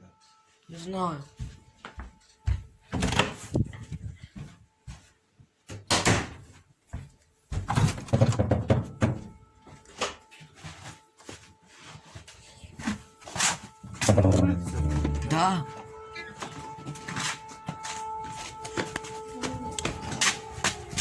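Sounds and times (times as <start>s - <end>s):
distant air-raid siren: 0.0s - 5.1s, 8.8s - 21.0s
loud bumps and knocks: 14.0s - 15.3s.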